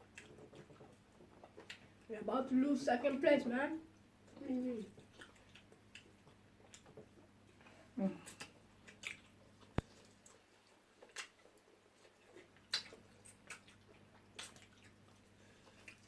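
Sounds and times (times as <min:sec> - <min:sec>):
wet chewing and lip smacks: 0:00.0 - 0:02.1, 0:04.0 - 0:16.0.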